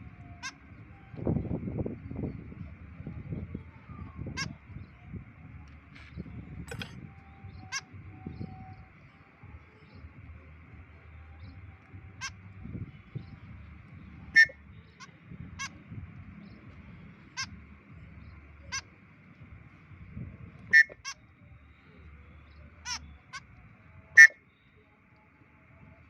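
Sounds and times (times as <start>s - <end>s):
bird harsh nasal calls: 4.2s - 4.7s, 7.5s - 8.0s, 14.2s - 16.5s, 17.2s - 19.0s, 20.7s - 21.3s, 22.5s - 23.6s, 24.2s - 24.4s.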